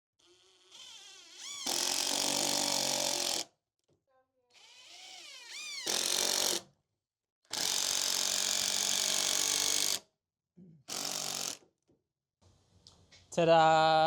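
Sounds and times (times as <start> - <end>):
power drill driving screws: 0.2 - 3.4, 4.6 - 6.6, 7.5 - 10.0, 10.9 - 11.6.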